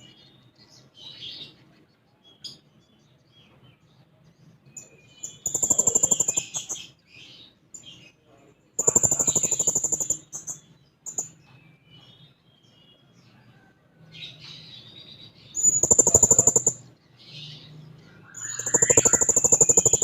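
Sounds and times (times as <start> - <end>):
soft bird chirps: 0.0 - 20.0
parrot rattling trills: 15.6 - 16.8.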